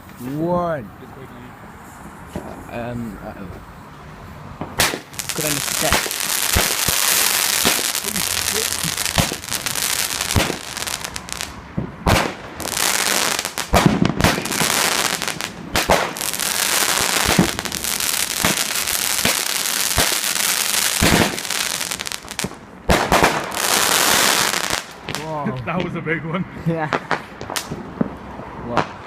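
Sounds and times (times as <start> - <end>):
loud firework bangs: 4.6 - 25.9, 26.9 - 29.0
fireworks crackling: 4.6 - 26.0.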